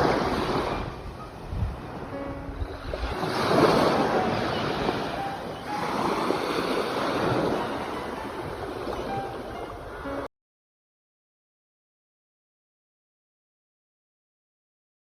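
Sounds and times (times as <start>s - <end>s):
sea waves breaking on shore: 0.0s - 10.3s.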